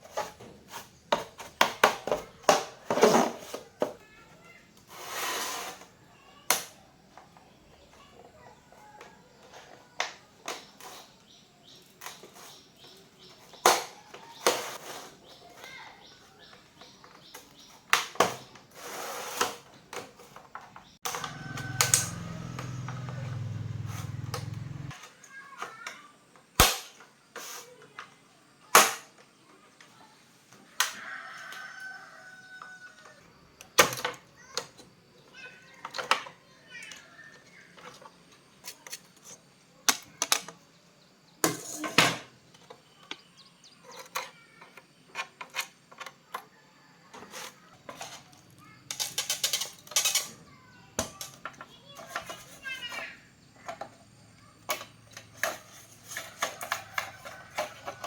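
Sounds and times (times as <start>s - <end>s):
tools clicking and knocking on bench: 54.7s - 58.0s.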